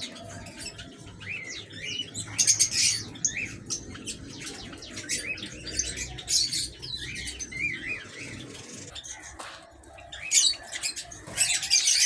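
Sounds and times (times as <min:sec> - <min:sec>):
small birds chirping and squawking: 0:00.0 - 0:12.0.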